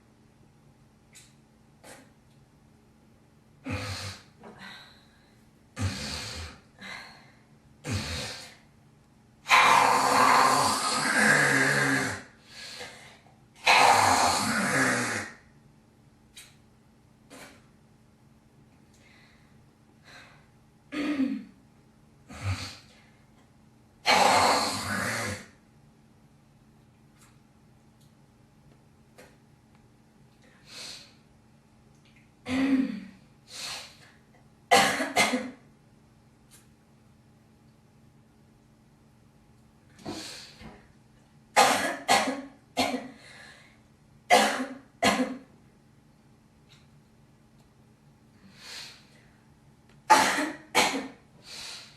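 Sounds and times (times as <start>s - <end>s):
girl clearing throat: 20.9s - 21.6s, 32.5s - 33.2s, 50.1s - 51.2s
girl coughing: 34.7s - 35.6s, 41.6s - 43.2s, 44.3s - 45.5s, 50.1s - 51.2s
girl breathing: 43.2s - 43.8s, 51.4s - 51.9s.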